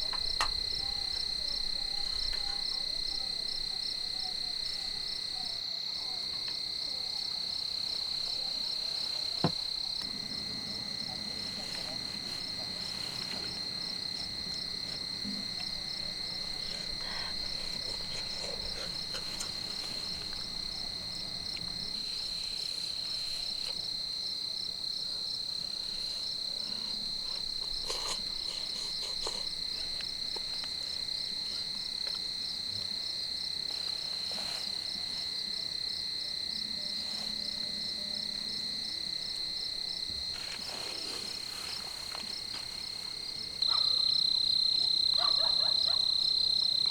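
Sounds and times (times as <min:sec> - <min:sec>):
insect high-pitched trill: 0:08.2 - 0:24.3
faint knocks: 0:09.4 - 0:22.0.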